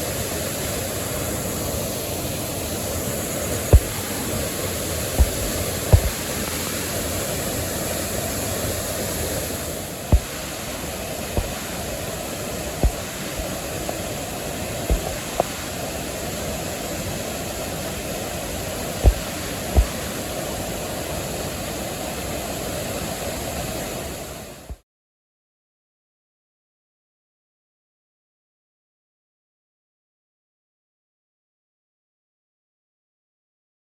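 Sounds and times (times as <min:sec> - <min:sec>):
waterfall rushing: 0:00.0 - 0:24.7
brief low thumps: 0:03.7 - 0:04.1, 0:05.2 - 0:06.2, 0:12.8 - 0:13.0, 0:14.9 - 0:15.4, 0:19.0 - 0:20.0.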